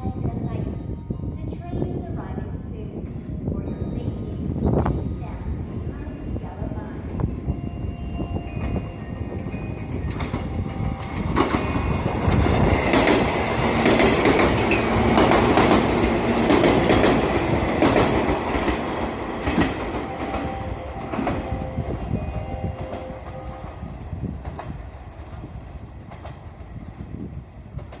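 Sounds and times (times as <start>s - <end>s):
electric train running on rails: 0.0s - 28.0s
train wheels clicking over rail joints: 10.0s - 20.5s.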